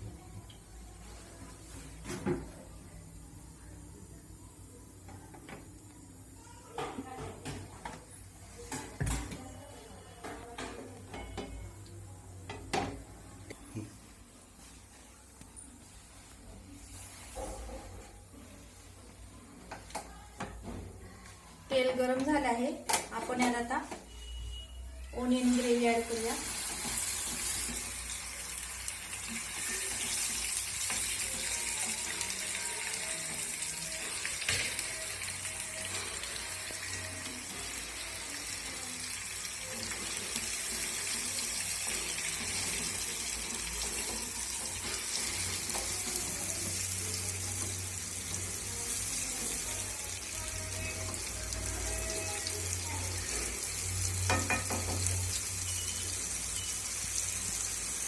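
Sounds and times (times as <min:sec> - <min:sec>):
paste sizzling in hot oil: 0:25.2 - 0:58.0.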